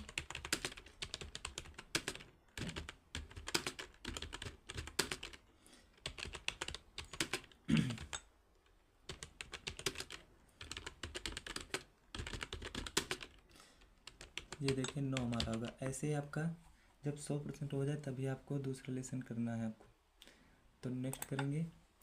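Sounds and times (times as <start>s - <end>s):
computer keyboard typing: 0.0s - 5.4s, 6.0s - 8.3s, 9.0s - 15.8s.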